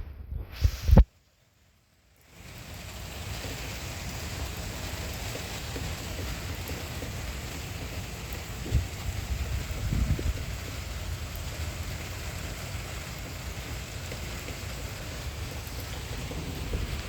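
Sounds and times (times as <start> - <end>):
steady rain hiss: 0.5 - 17.0
low rumble: 15.4 - 17.0.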